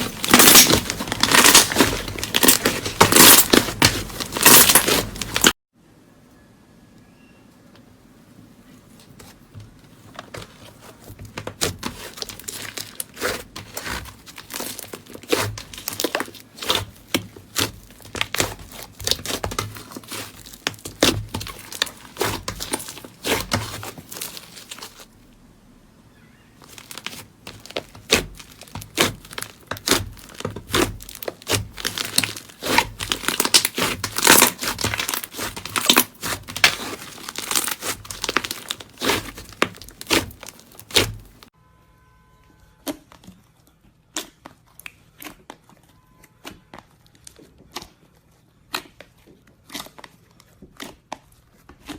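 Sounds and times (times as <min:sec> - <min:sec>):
slime squeezed by hand crackling: 0:00.0 - 0:05.5, 0:26.7 - 0:41.4.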